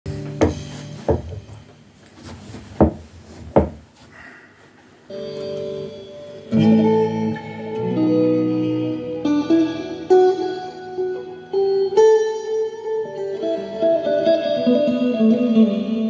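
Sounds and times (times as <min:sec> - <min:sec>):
loud chord: 0:05.1 - 0:13.9
sustained instrumental notes: 0:05.1 - 0:14.4.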